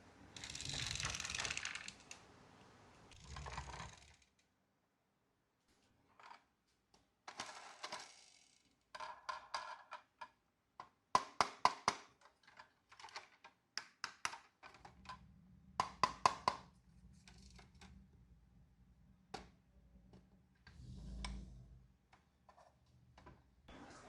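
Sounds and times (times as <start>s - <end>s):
marbles rolling and clattering: 0.4s - 2.2s, 3.1s - 4.2s, 7.3s - 10.1s.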